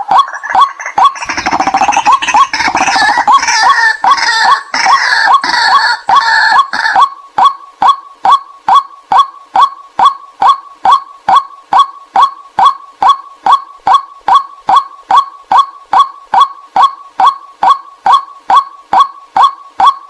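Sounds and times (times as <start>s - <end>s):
harsh chorus of bird calls: 0.0s - 7.1s
waterhen call repeating: 0.0s - 20.0s.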